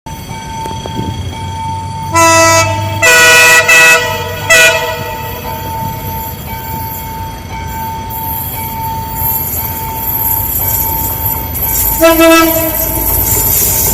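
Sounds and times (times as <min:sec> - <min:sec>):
running train whine and rumble: 0:00.1 - 0:13.9
train horn blasts: 0:02.1 - 0:05.5, 0:11.9 - 0:13.2.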